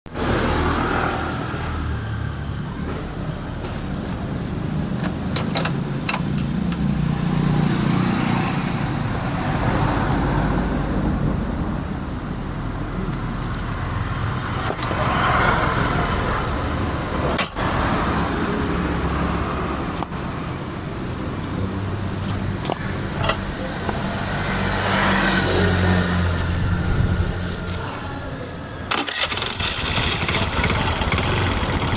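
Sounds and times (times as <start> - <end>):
scooter engine running: 28.9 - 31.9.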